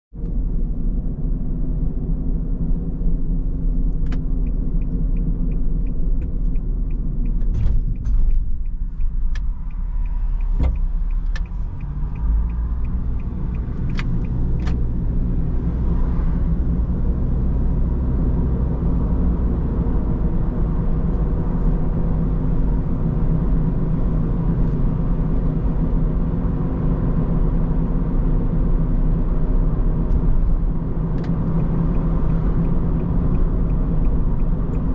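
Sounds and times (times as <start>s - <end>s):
car engine and road rumble: 0.1s - 34.9s
turn signal ticking: 2.0s - 34.9s
sharp clicks: 4.0s - 14.9s.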